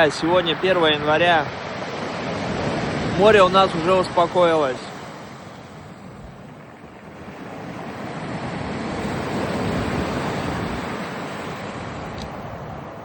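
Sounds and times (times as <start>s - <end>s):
surf washing onto shore: 0.0s - 13.0s.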